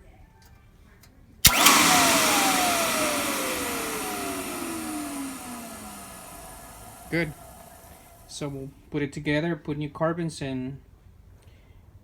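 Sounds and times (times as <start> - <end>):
vacuum motor whine and air rush: 1.4 - 8.4
vacuum switch click: 1.5 - 8.0.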